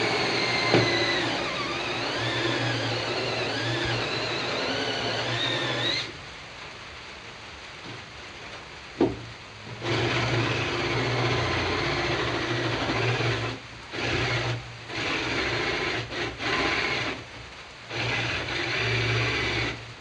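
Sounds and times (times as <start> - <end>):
power tool rasping wood: 0.0 - 6.1, 9.8 - 17.2, 17.9 - 19.8.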